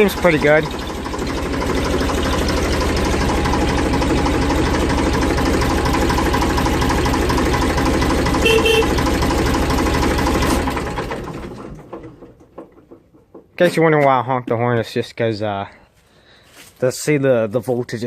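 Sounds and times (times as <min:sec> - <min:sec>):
tractor engine idling: 0:00.0 - 0:13.8
tractor horn honking: 0:08.2 - 0:09.3.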